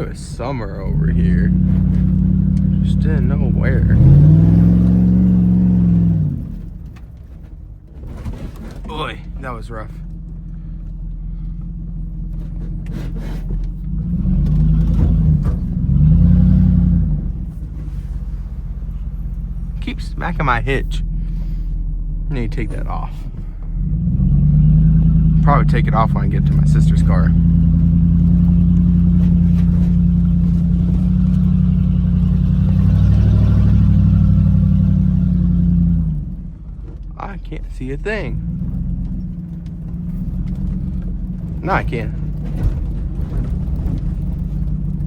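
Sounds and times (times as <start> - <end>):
truck knocks and rattles: 0.0 - 11.1, 12.1 - 20.7, 22.5 - 45.0
truck engine rumbling and revving: 0.0 - 45.0
light knocks and rattles: 38.4 - 45.0.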